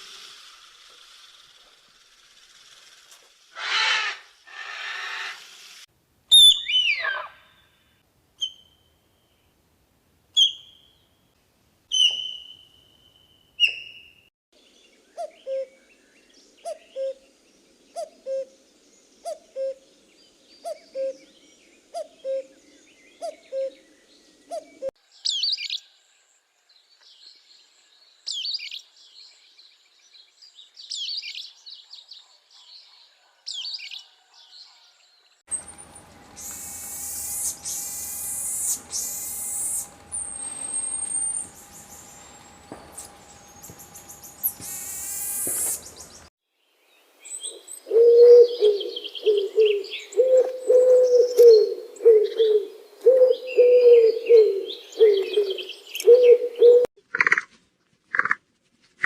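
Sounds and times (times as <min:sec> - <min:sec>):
harsh sweeping bird calls: 0:02.4 - 0:07.8, 0:35.5 - 0:46.3
birds chirping: 0:28.3 - 0:46.3, 0:47.2 - 0:56.9
rapid low bird calls: 0:35.5 - 0:46.3.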